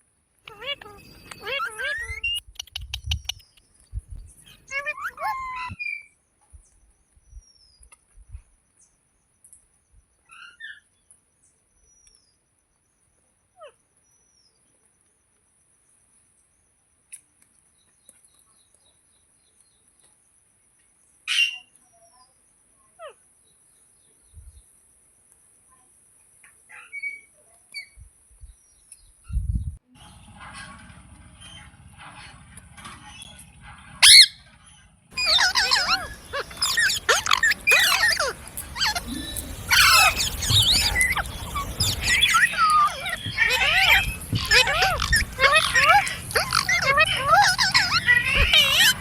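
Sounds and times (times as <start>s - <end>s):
parrot chirping and squeaking: 0.5s - 3.6s, 4.4s - 6.0s, 34.0s - 49.0s.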